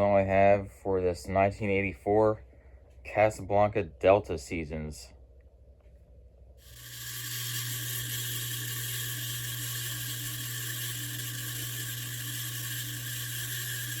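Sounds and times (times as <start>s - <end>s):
ceiling fan running: 5.8s - 14.0s.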